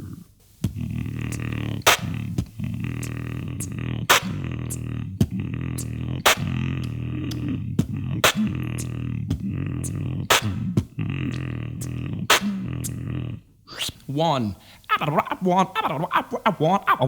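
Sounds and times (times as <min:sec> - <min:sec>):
beatboxed snare hits: 0:00.5 - 0:13.0.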